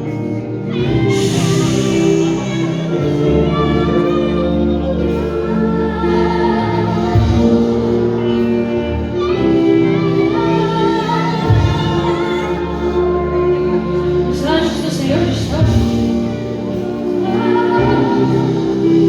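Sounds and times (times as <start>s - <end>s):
band playing sustained chords: 0.0s - 19.0s
people singing: 0.0s - 19.0s.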